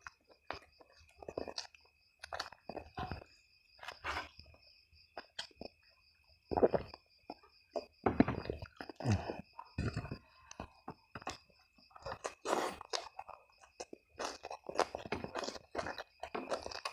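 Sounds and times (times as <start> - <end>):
person chewing: 0.0 - 4.4, 5.1 - 5.8, 6.5 - 16.9.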